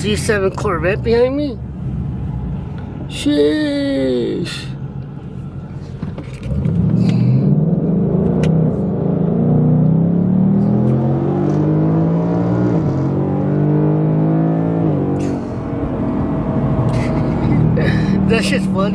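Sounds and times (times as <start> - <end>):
car engine accelerating hard: 4.0 - 18.9.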